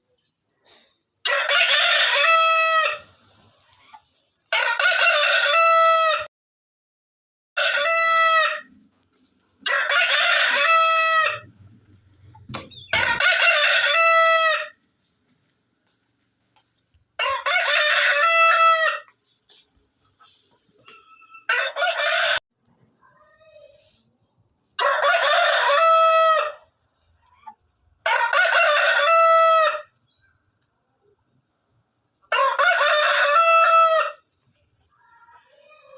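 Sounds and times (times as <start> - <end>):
roosters crowing: 1.2 - 3.2, 4.5 - 6.3, 7.6 - 8.8, 9.6 - 11.6, 12.8 - 14.8, 17.2 - 19.1, 20.8 - 22.4, 24.8 - 26.7, 28.0 - 30.0, 32.3 - 34.2.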